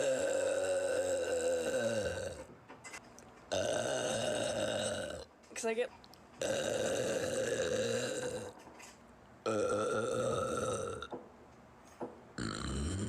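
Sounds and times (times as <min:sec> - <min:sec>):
woman burping: 0:00.0 - 0:02.5, 0:03.5 - 0:05.3, 0:06.4 - 0:08.6, 0:09.4 - 0:11.2, 0:12.4 - 0:13.0.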